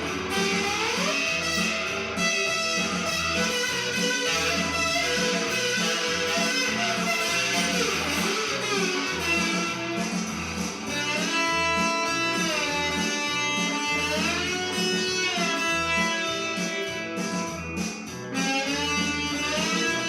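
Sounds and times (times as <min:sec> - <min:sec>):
low bass pulse: 0:00.0 - 0:14.8
electric guitar lead lines: 0:00.0 - 0:20.0.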